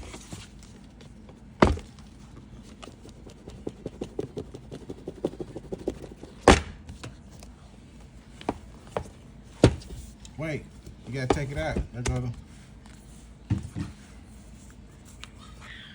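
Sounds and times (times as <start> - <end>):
loud box knocks: 1.6 - 1.9, 6.4 - 6.8, 9.6 - 9.9.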